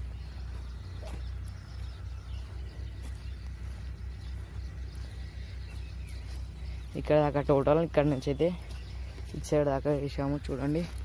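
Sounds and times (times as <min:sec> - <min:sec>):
faint bird chirps: 0:00.0 - 0:11.0
steady low rumble: 0:00.0 - 0:11.0.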